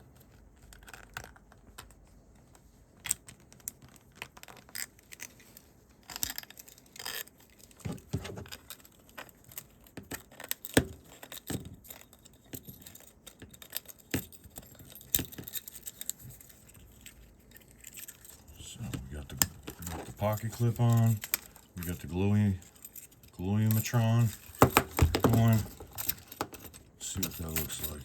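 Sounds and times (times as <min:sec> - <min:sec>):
metal key rings clicking and jingling: 0:25.3 - 0:28.0.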